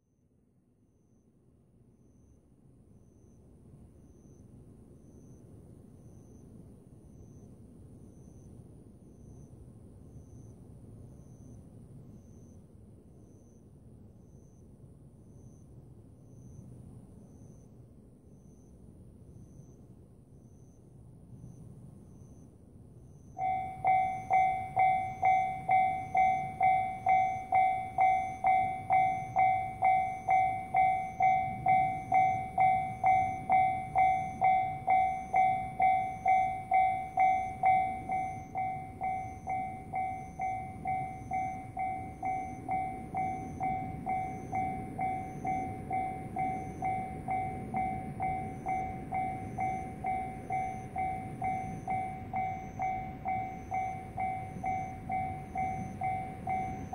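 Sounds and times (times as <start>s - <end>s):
level-crossing bell clanging: 23.4s - 56.9s.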